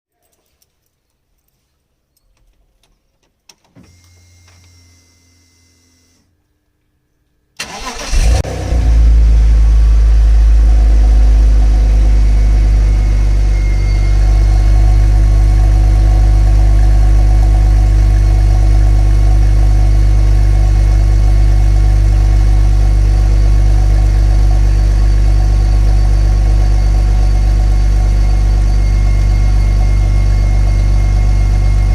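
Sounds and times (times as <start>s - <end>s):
starter motor cranking: 7.6s - 8.4s
car engine revving and idling: 7.7s - 31.9s.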